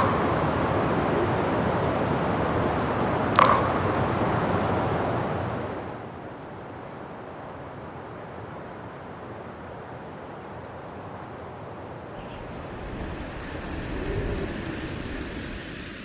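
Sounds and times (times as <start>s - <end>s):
steady rain: 12.2s - 16.0s.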